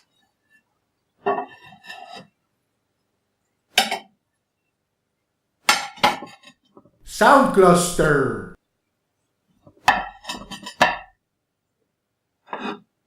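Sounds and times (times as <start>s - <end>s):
dishes clinking and clattering: 10.0s - 11.1s, 12.5s - 12.9s.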